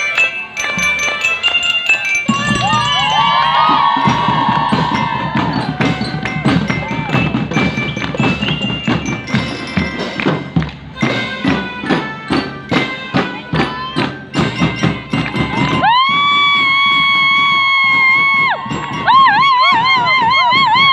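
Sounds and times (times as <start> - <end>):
ringing metal bell notes: 0.0 - 10.2.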